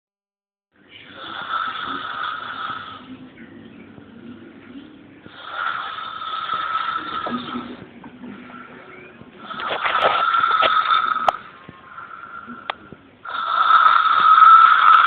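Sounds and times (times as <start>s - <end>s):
quiet breathing: 0.9s - 3.4s, 4.0s - 15.0s
person snoring: 1.1s - 3.1s, 5.3s - 7.8s, 9.4s - 15.0s.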